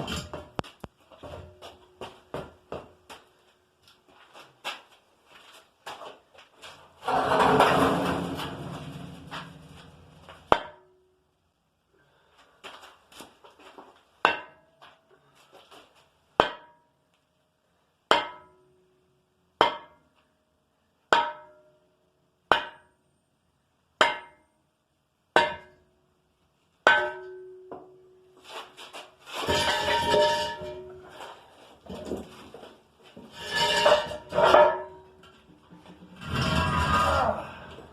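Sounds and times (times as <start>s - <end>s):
metal clattering: 7.0s - 10.5s, 29.4s - 30.9s.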